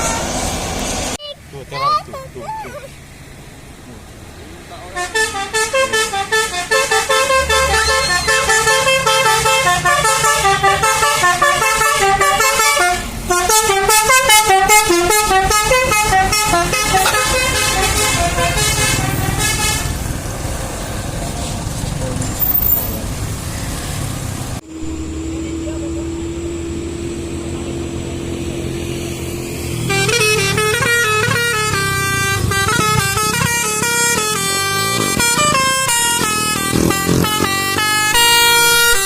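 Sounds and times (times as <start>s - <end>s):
bus engine running: 0.0s - 39.0s
musical bus air horn: 5.0s - 20.1s, 29.8s - 39.0s.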